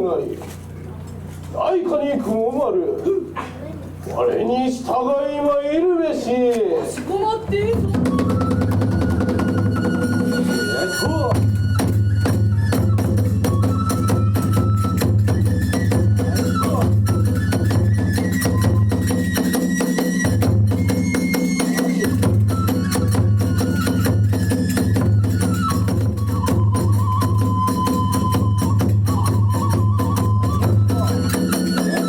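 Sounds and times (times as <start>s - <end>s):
fast drum beats: 7.2s - 32.0s
flute melody: 7.6s - 32.0s.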